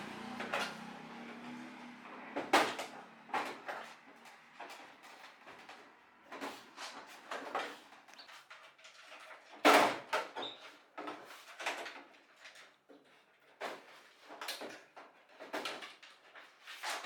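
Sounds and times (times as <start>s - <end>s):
objects knocking and scraping: 2.4s - 12.4s.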